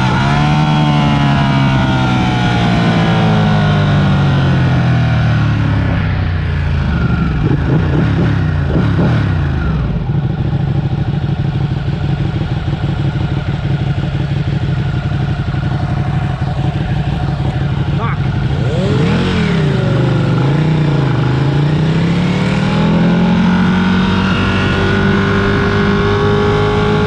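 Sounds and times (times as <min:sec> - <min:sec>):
motorcycle engine: 0:00.0 - 0:27.0.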